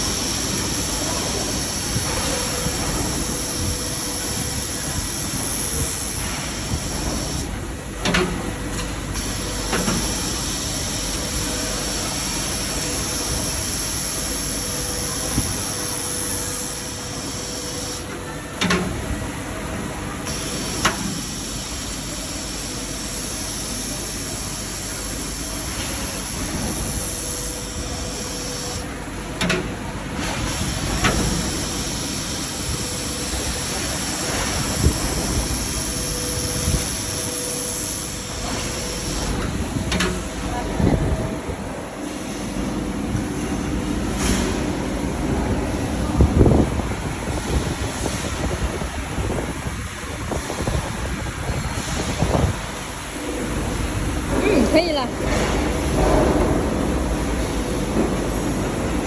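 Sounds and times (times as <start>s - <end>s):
laser welding machine hissing: 0.0s - 7.7s, 9.2s - 18.1s, 20.3s - 28.9s, 30.2s - 40.5s.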